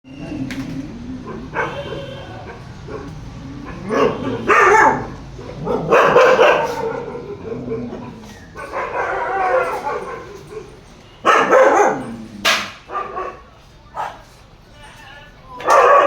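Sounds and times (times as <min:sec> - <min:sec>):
dog barking and whining: 0:00.1 - 0:14.2, 0:15.6 - 0:16.0.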